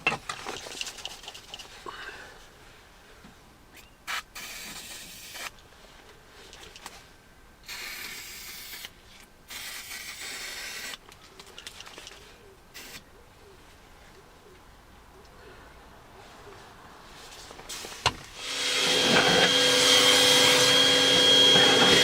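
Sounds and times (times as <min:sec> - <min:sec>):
aerosol can spraying: 0:04.1 - 0:05.5, 0:07.6 - 0:08.9, 0:09.5 - 0:11.0, 0:12.8 - 0:13.0.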